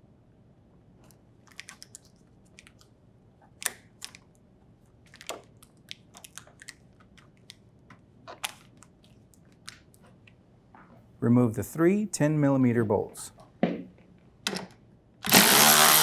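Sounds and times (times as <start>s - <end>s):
adhesive tape tearing: 15.2s - 16.0s.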